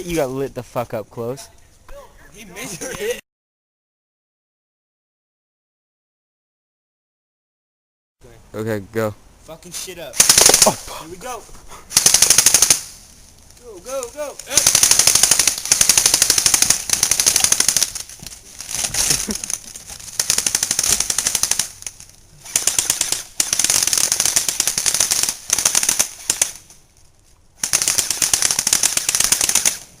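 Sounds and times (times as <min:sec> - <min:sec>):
airsoft rifles firing full auto: 0:10.2 - 0:10.8, 0:11.9 - 0:13.0, 0:14.4 - 0:26.7, 0:27.6 - 0:30.0.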